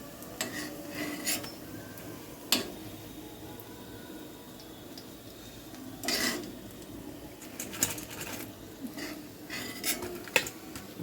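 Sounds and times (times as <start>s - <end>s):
faint frying hiss: 0.0s - 11.0s
utensil scraping and clinking pan: 0.4s - 1.6s, 6.0s - 6.6s, 7.5s - 10.5s.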